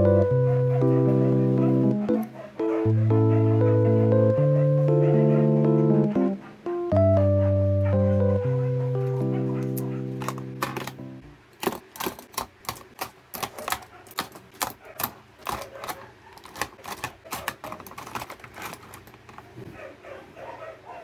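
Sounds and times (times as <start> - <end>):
keyboard typing: 9.0 - 19.5.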